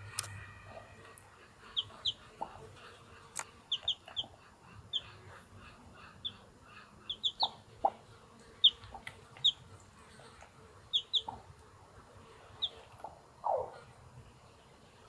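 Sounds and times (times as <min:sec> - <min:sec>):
hen clucking low: 0:00.6 - 0:09.6, 0:12.6 - 0:13.9
chicks peeping: 0:00.6 - 0:09.7, 0:10.3 - 0:11.6, 0:12.4 - 0:13.9.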